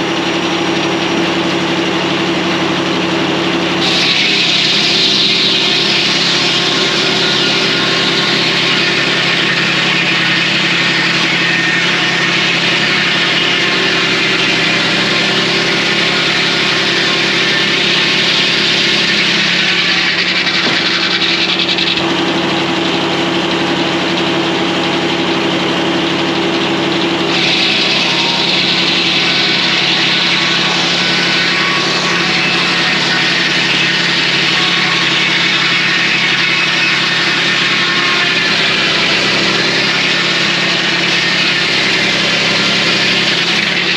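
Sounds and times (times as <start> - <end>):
sawmill engine running: 0.0 - 43.9
saw blade hissing through logs: 3.8 - 22.0.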